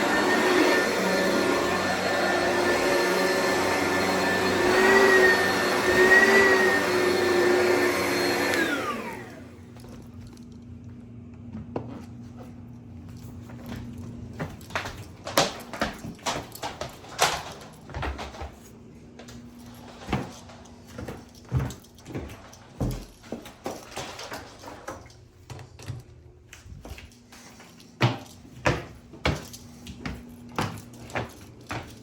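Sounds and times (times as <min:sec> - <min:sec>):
vacuum motor hum: 0:00.0 - 0:17.4.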